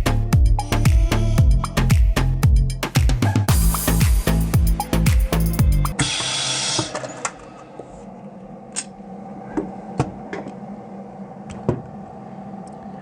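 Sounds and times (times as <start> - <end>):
background music: 0.0 - 6.0.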